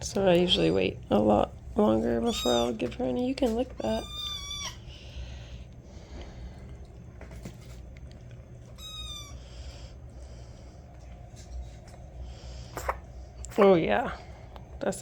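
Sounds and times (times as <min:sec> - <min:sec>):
kitten eating wet food: 0:03.7 - 0:13.8
kitten snorting breaths: 0:09.2 - 0:11.3, 0:12.0 - 0:13.4.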